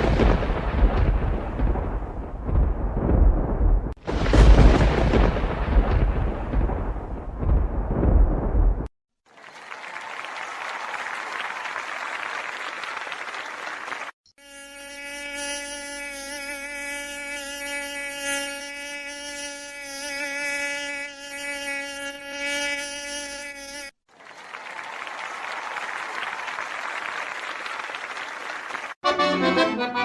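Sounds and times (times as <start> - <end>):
flying insect buzzing: 14.3 - 24.0.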